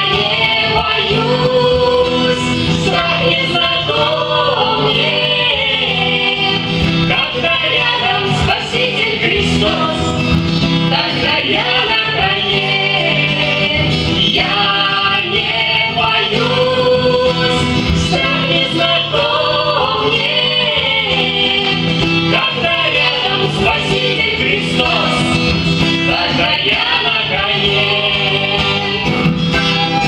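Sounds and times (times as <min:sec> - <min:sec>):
acoustic guitar: 0:00.0 - 0:30.0
men and women singing: 0:00.0 - 0:30.0.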